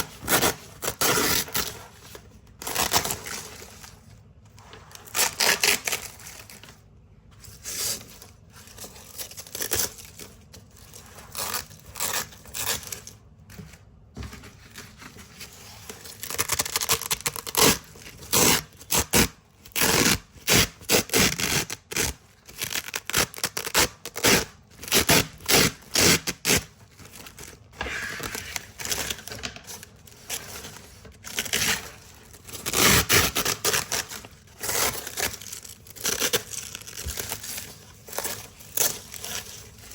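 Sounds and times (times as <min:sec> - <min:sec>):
velcro tape ripping: 0:16.2 - 0:26.7, 0:32.5 - 0:34.2.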